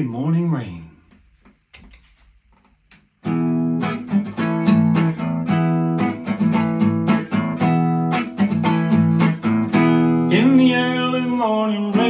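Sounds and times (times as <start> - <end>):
acoustic guitar strumming: 3.2 - 12.0.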